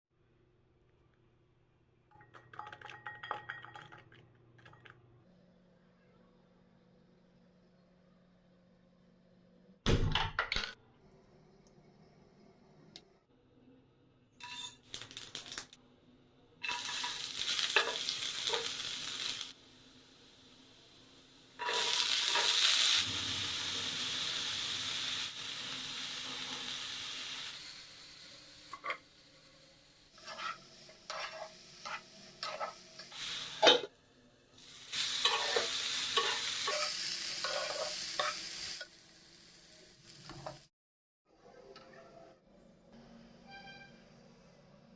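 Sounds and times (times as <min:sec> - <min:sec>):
food sizzling in hot oil: 0:14.4 - 0:15.8, 0:16.6 - 0:40.7.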